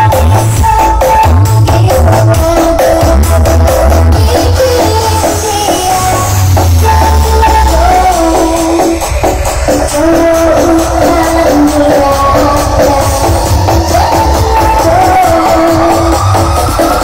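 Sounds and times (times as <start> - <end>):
loud music with heavy bass: 0.0 - 17.0.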